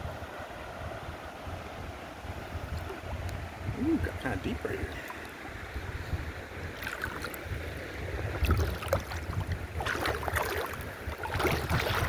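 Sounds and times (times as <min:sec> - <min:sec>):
person wading through water: 0:04.7 - 0:12.0
water splashing: 0:06.6 - 0:12.0.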